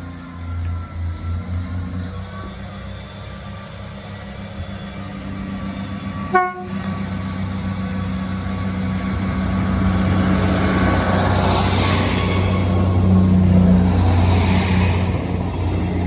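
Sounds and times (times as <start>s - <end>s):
train engine hum: 0.0s - 16.0s
train horn toot: 6.2s - 7.0s.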